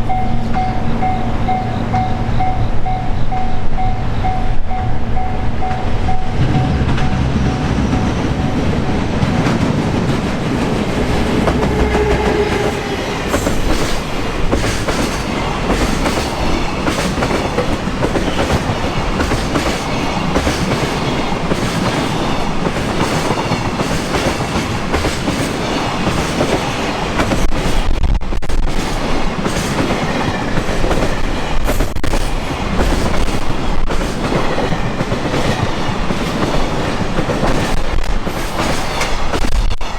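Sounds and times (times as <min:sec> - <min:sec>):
freight train passing: 0:00.0 - 0:39.9
train wheels clacking over rail joints: 0:06.4 - 0:39.9.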